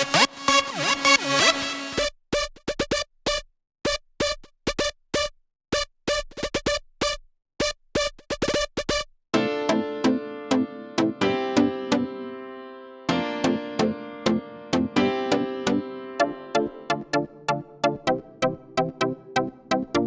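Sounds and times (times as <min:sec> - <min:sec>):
sustained synth chords: 0:00.0 - 0:02.0, 0:09.4 - 0:20.0
synthesizer stabs: 0:00.0 - 0:02.0, 0:09.4 - 0:20.0.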